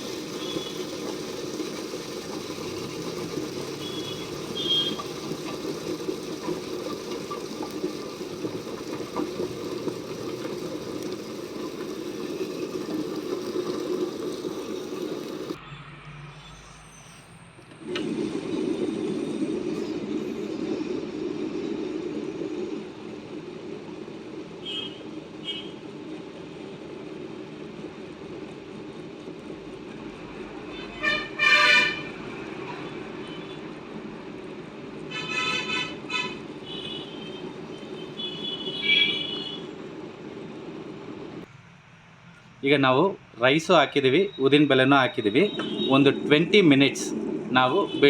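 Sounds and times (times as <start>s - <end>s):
stone wet grinder running: 0.0s - 15.6s
vehicle horns honking: 3.7s - 5.4s, 24.6s - 25.8s, 30.7s - 33.7s, 35.1s - 39.7s, 45.2s - 46.3s.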